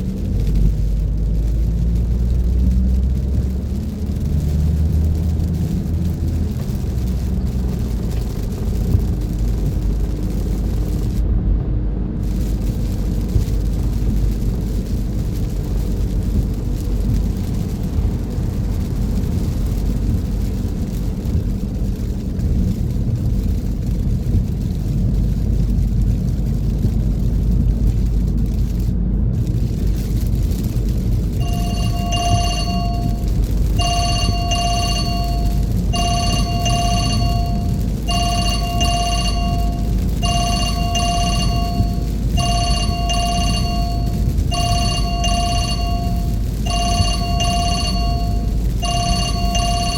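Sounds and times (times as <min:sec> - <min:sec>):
car road and engine rumble: 0:00.0 - 0:49.9
telephone ringtone: 0:31.4 - 0:49.9.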